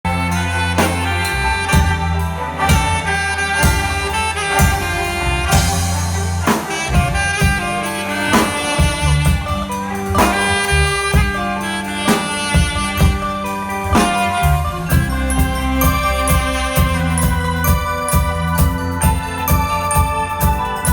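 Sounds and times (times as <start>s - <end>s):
backing track with drums and bass: 0.0s - 20.9s
saxophone melody: 0.0s - 20.9s.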